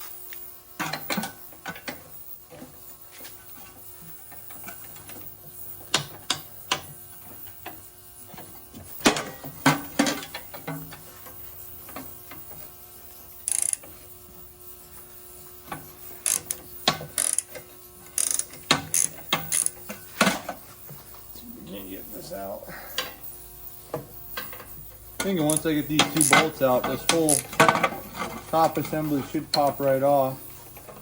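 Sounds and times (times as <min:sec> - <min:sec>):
metal tools clanking on metal: 0:00.8 - 0:02.8, 0:03.5 - 0:12.7, 0:15.7 - 0:21.2, 0:21.8 - 0:23.3, 0:23.9 - 0:31.0
ratchet wrench clicking: 0:13.4 - 0:13.9, 0:16.2 - 0:19.8, 0:25.2 - 0:27.8.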